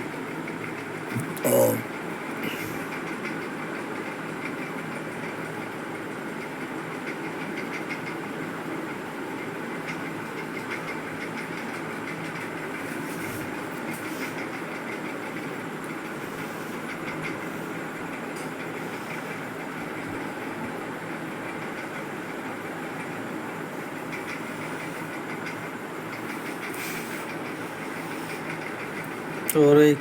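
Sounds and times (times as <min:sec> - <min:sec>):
steady mechanical running noise: 0:00.0 - 0:30.0.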